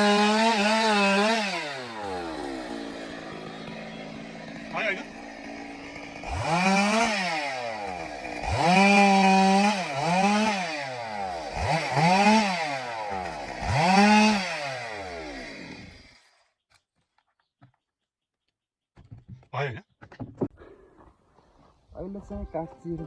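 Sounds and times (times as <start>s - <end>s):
chainsaw revving: 0.0s - 16.3s.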